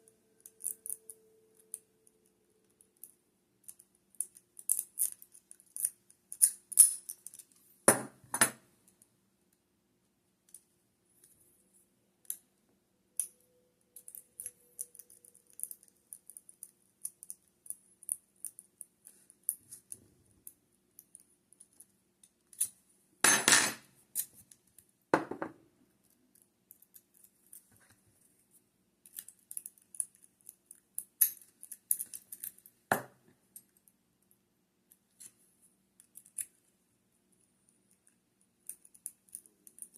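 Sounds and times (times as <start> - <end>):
scratchy metal ticking of lock pick: 13.2 - 18.8.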